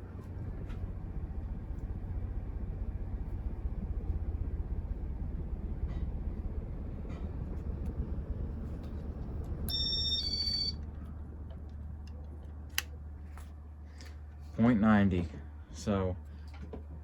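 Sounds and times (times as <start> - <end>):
ceiling fan motor humming: 0.0 - 17.0
electronic beep of stepped tones: 9.7 - 10.8.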